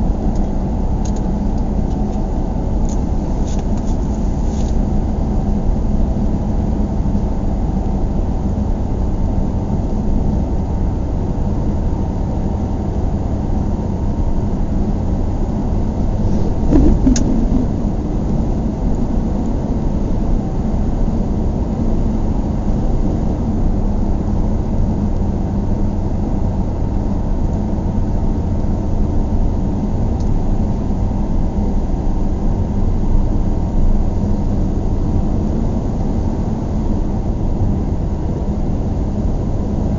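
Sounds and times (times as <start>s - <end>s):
car engine and road rumble: 0.0s - 39.9s
click: 0.3s - 2.1s, 2.9s - 3.9s.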